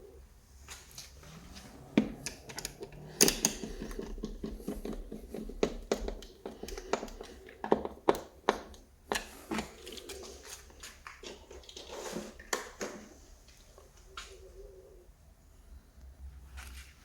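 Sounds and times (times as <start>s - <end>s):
small hard parts clicking: 2.0s - 10.2s.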